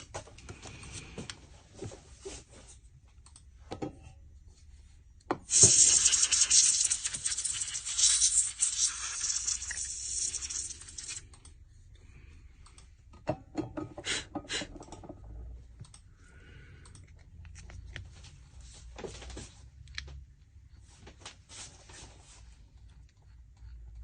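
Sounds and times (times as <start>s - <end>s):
hissing noise: 5.5s - 11.2s.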